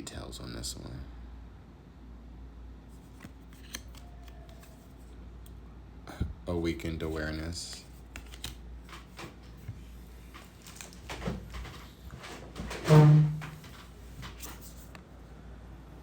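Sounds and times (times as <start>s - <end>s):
cards flipping and tapping: 3.1s - 4.9s, 7.7s - 11.8s.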